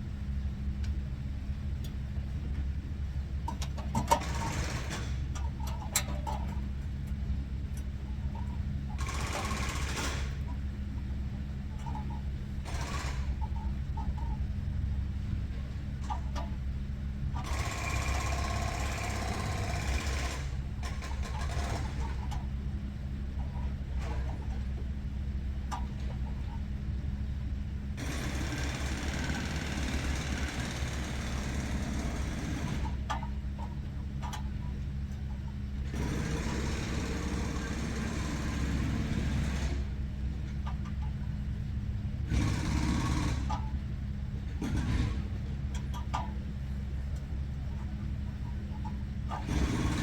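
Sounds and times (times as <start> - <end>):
steady low hum: 0.0 - 29.7, 37.0 - 50.0
engine idling hum: 28.7 - 50.0.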